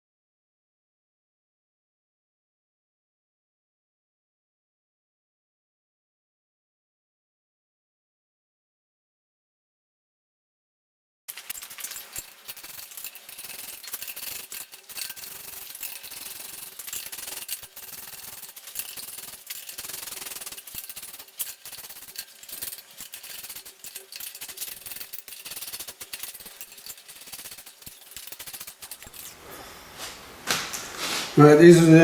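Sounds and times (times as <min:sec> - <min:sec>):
metal parts rubbing and rattling: 0:11.3 - 0:31.4.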